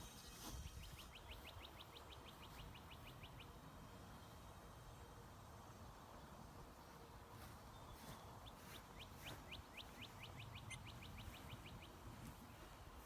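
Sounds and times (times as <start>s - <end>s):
bird song trill: 0.0s - 4.0s, 7.7s - 12.1s
low background noise: 0.0s - 13.0s.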